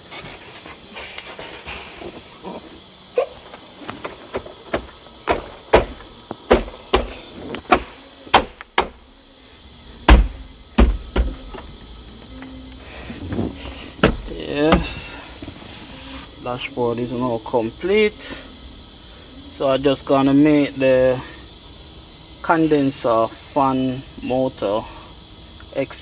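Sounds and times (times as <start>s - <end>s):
dashboard panel knocks and clicks: 4.7s - 9.1s, 10.0s - 11.8s, 13.3s - 15.1s.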